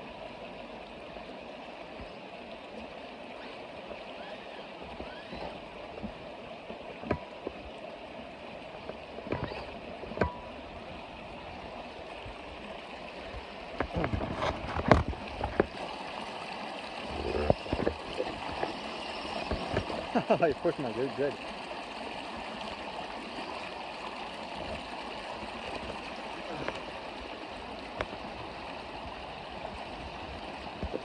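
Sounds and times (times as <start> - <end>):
creek water running: 0.0 - 31.0
sharp splashes and knocks: 9.2 - 10.5.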